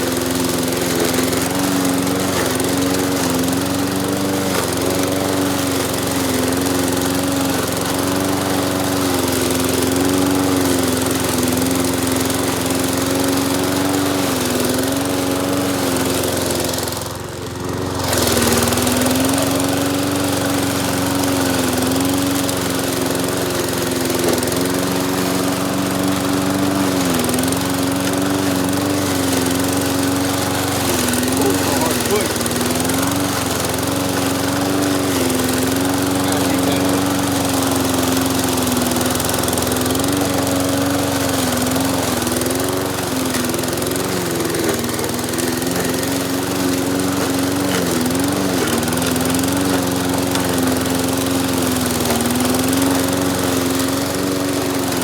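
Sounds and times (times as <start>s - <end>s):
lawn mower engine running: 0.0s - 55.0s.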